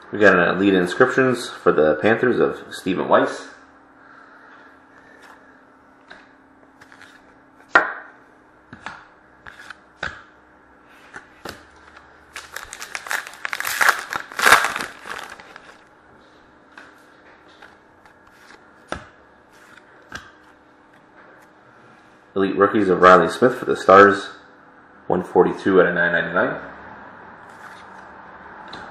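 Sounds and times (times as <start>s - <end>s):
foil wrapper crinkling and tearing: 12.3s - 15.8s.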